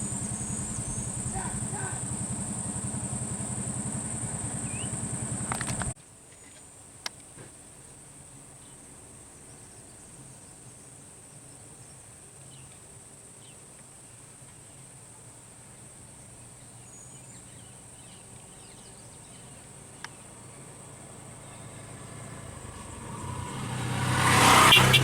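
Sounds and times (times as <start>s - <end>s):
high-pitched insect drone: 0.0s - 5.9s
vehicle engine running: 0.0s - 6.0s, 20.2s - 25.0s.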